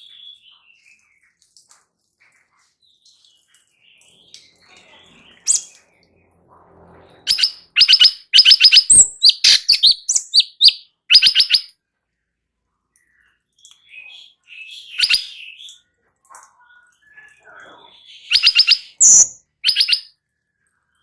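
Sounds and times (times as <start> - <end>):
songbird singing rattling notes: 2.9 - 11.7, 13.0 - 20.1.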